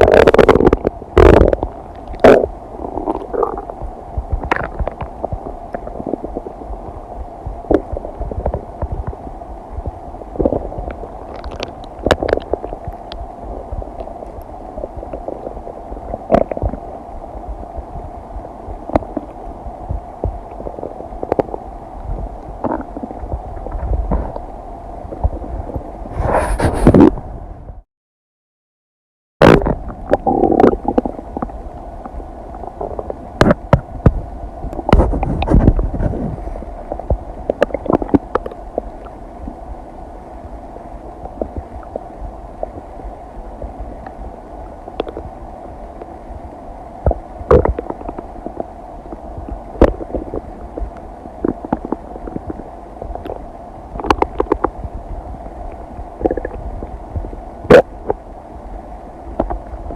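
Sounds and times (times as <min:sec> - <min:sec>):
stomach gurgling and popping: 0:00.0 - 0:24.5, 0:25.1 - 0:27.2, 0:29.4 - 0:39.6, 0:41.0 - 0:43.0, 0:44.9 - 0:46.2, 0:47.0 - 0:58.3, 0:59.3 - 0:59.9
low stomach rumble: 0:00.0 - 0:27.8, 0:29.4 - 0:39.8, 0:40.4 - 0:59.9.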